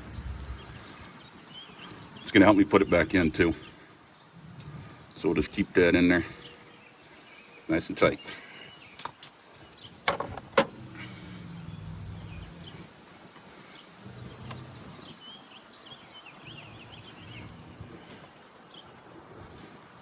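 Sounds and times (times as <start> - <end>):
low hum: 10.7 - 13.0.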